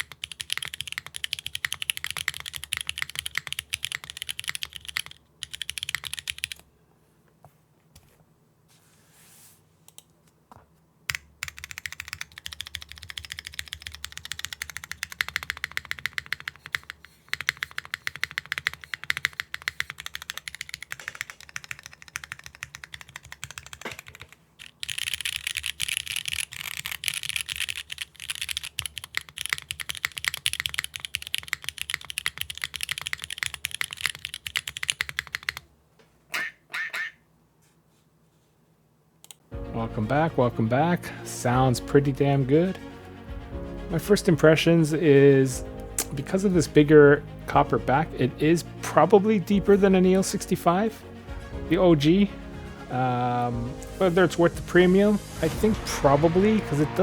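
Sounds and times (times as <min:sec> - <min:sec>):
mechanical keyboard typing: 0:00.0 - 0:06.6, 0:11.1 - 0:35.6.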